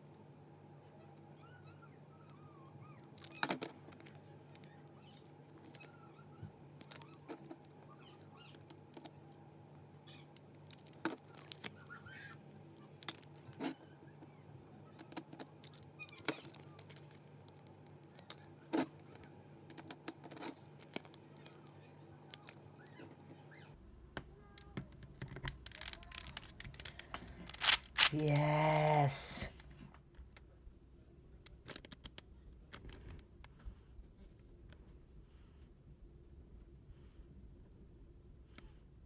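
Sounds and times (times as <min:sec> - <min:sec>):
plastic pieces clicking and tapping: 0:24.6 - 0:28.2.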